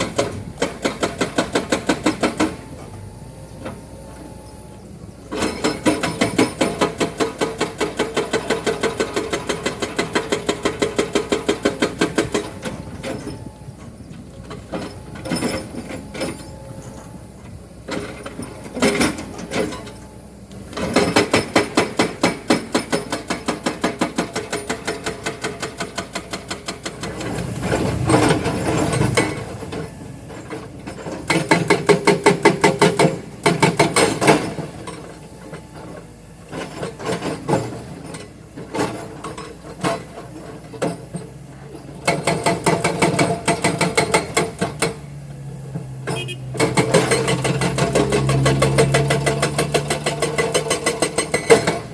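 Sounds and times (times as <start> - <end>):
excavator engine running: 0.0 - 51.9
hydraulic breaker hammering rock: 0.0 - 51.9.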